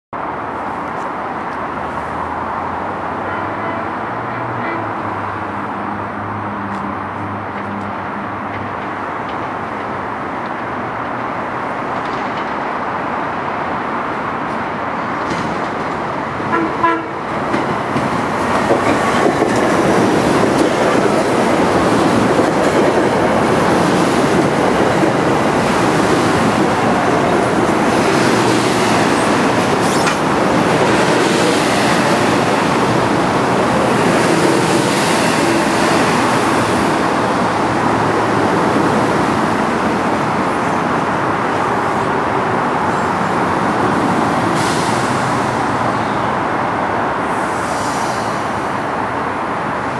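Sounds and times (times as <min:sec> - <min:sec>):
rail clatter: 0:07.5 - 0:12.8, 0:15.1 - 0:41.4
electric train wheels rushing: 0:14.6 - 0:49.9.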